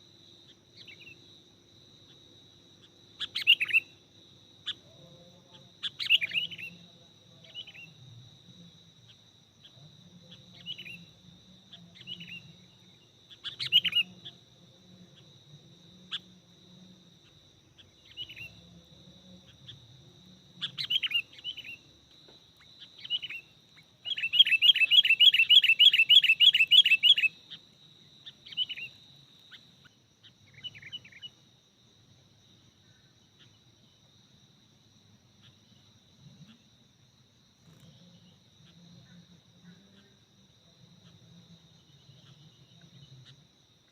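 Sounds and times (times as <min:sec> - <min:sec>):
bird chirping: 0:02.8 - 0:04.0, 0:05.8 - 0:06.8, 0:09.6 - 0:14.4, 0:20.6 - 0:21.9, 0:22.6 - 0:31.4.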